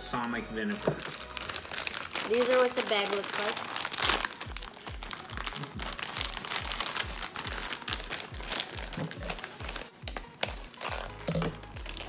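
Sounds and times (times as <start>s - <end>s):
chip bag crinkling: 0.2s - 12.0s
music with bass-drum beat: 4.3s - 12.0s.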